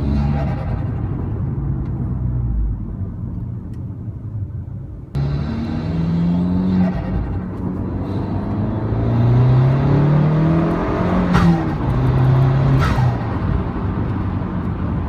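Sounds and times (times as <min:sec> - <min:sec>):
car engine accelerating: 0:05.1 - 0:15.0.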